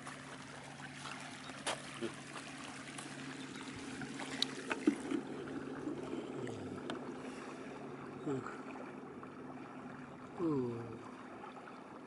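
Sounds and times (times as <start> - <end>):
flowing water: 0.0 - 12.0
low steady hum: 0.0 - 12.0
sharp clicks or small splashes: 4.2 - 5.3.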